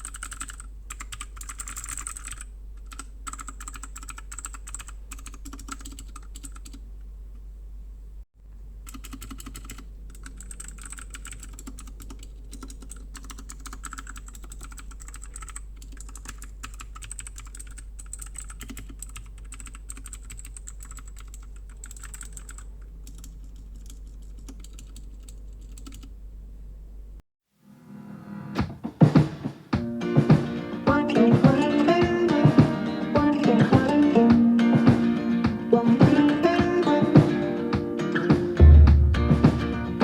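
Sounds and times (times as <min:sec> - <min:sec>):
mechanical keyboard typing: 0:00.0 - 0:06.8, 0:08.8 - 0:26.1.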